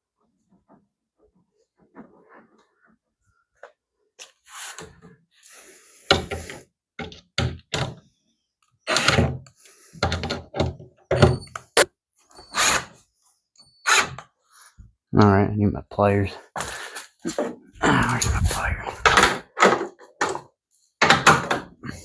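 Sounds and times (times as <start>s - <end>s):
plastic parts knocking and scraping: 6.1s - 8.0s, 9.0s - 11.4s, 18.2s - 21.8s.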